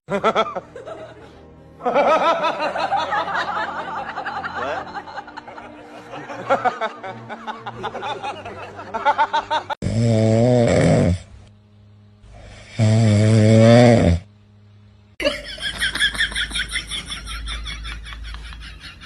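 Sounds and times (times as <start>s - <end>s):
light plucked music: 0.1s - 9.8s
loud snoring: 9.8s - 11.4s, 12.2s - 14.3s.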